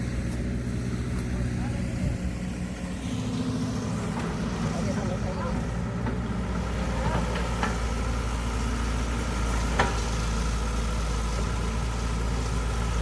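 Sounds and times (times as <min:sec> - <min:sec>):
engine idling: 0:00.0 - 0:13.0.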